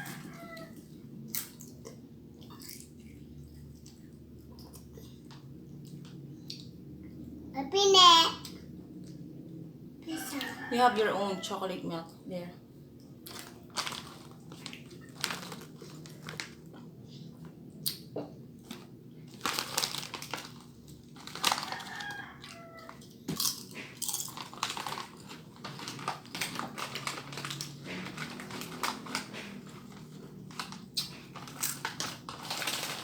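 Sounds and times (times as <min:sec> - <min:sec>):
food being crunched: 0:13.3 - 0:16.9, 0:18.6 - 0:33.0
snack packaging crinkling: 0:13.3 - 0:16.9, 0:18.6 - 0:33.0.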